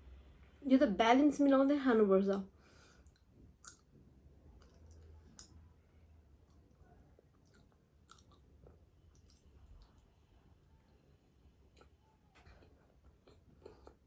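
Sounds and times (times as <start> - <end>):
wet mouth clicks chewing sweets: 3.0 - 5.6, 6.4 - 10.1, 11.7 - 14.0.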